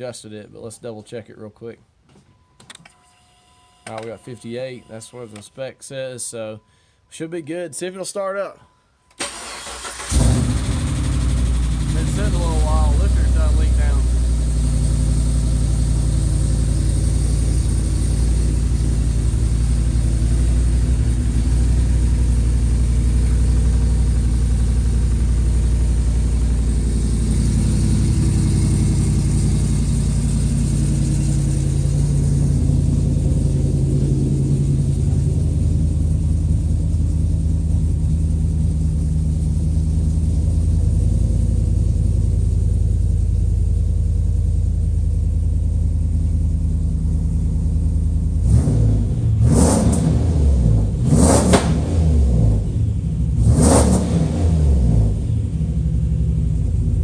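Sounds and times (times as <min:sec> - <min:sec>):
engine idling with low rumble: 0:10.1 - 0:57.0.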